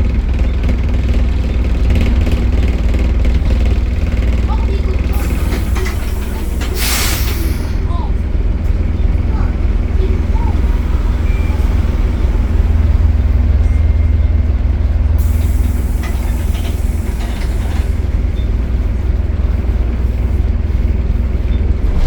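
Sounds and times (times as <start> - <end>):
bus diesel engine rumbling: 0.0 - 22.0
hiss: 5.2 - 7.8.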